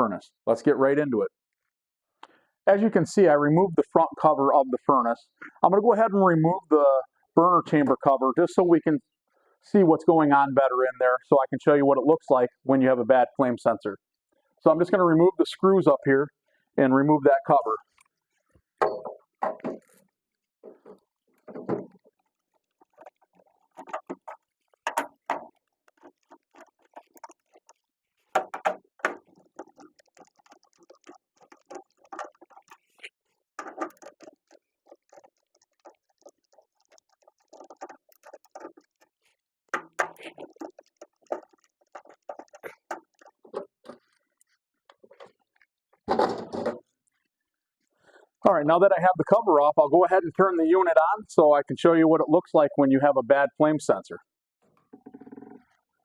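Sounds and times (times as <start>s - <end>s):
clicks and taps on sheet metal: 23.8s - 32.8s, 33.6s - 44.2s.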